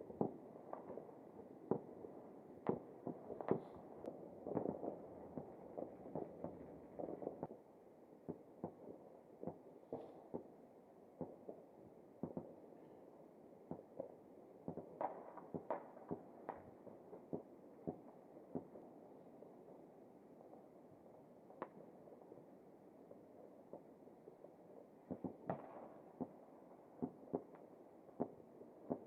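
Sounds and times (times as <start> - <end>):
distant fireworks popping: 2.6 - 7.6.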